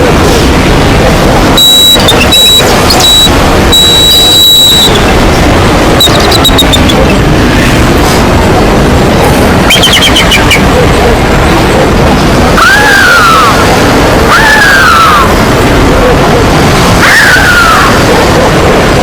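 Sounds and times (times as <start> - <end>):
loud steady rushing noise: 0.0 - 19.0
animal chattering trill: 9.7 - 10.8
animal calls rising and falling: 12.6 - 15.5, 16.8 - 18.5.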